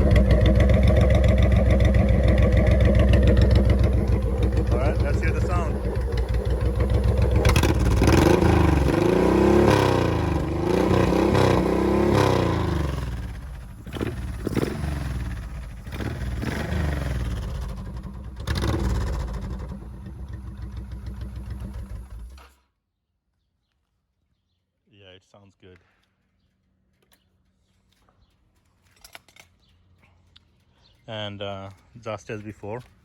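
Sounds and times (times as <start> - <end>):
motorcycle engine revving: 0.0 - 22.6.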